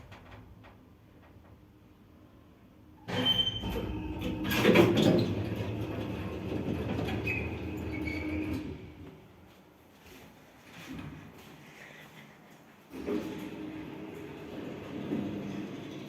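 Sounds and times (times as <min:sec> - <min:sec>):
elevator humming and rattling: 0:00.0 - 0:09.6, 0:12.9 - 0:16.0.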